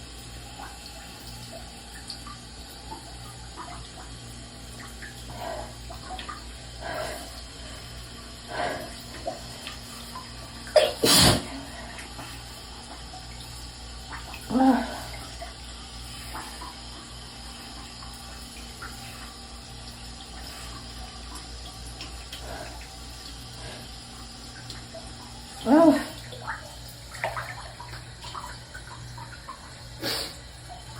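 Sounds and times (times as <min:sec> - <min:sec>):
woman sneezing: 0:10.8 - 0:11.5
woman saying ah: 0:25.6 - 0:26.2.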